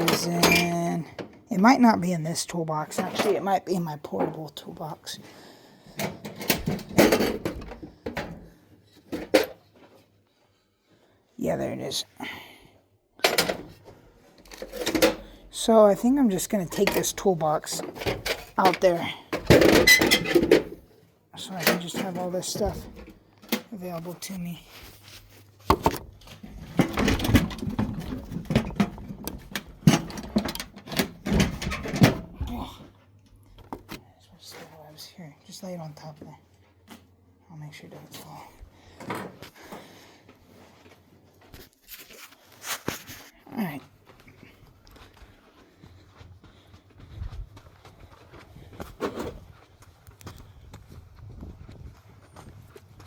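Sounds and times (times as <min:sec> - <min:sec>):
tools clattering in toolbox: 0:06.0 - 0:08.4, 0:09.0 - 0:09.7, 0:13.2 - 0:13.8, 0:14.4 - 0:15.4, 0:16.7 - 0:20.8, 0:25.7 - 0:32.3.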